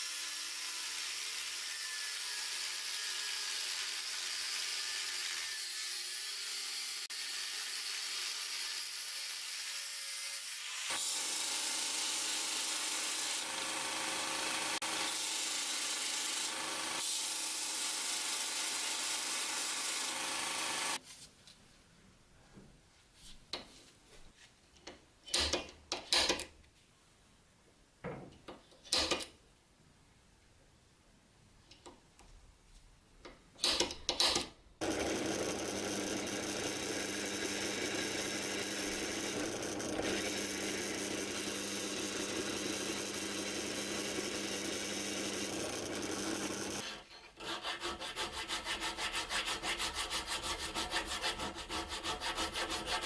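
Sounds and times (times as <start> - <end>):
sawing or filing strokes: 46.7 - 53.0.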